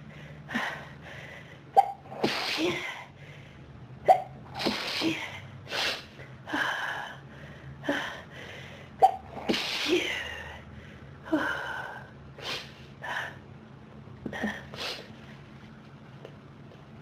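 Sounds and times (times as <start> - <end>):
person sneezing: 1.8 - 3.0, 4.1 - 6.1, 9.0 - 10.3.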